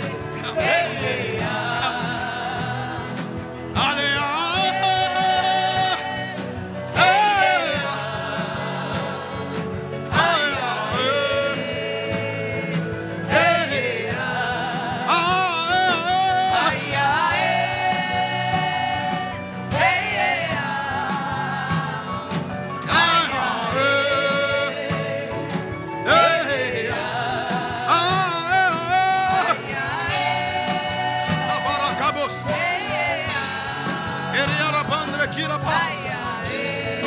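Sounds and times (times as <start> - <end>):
instrumental backing: 0.0 - 37.0.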